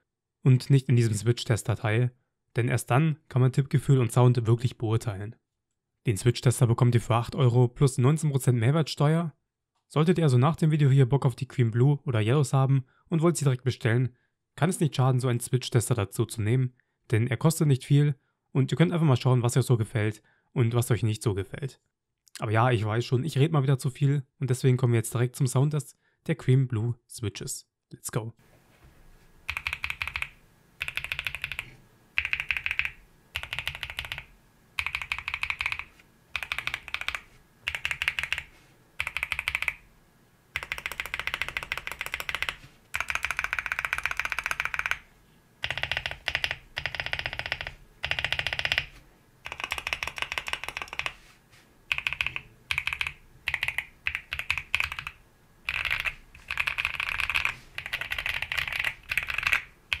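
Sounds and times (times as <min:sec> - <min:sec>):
mechanical keyboard typing: 0:29.5 - 0:39.8, 0:40.6 - 0:51.2, 0:51.9 - 1:00.0.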